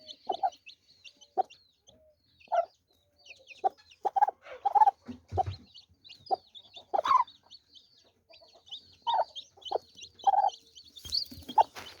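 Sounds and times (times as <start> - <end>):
chicks peeping: 0.0 - 12.0
hen clucking: 0.0 - 12.0
rustling: 11.0 - 12.0.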